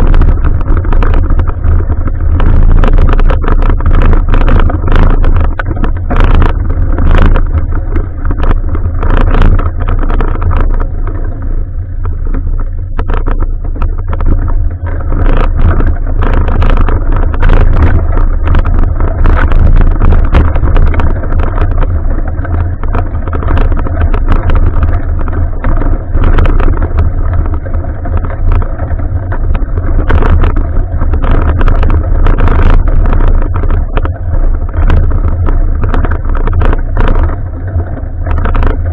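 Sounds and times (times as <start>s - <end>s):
bicycle rattles and knocks: 0.0s - 38.9s
wind and road rumble: 0.0s - 38.9s.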